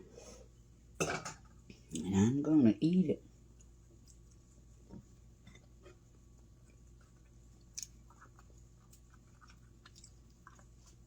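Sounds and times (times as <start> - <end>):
person chewing a sandwich: 3.4 - 11.0.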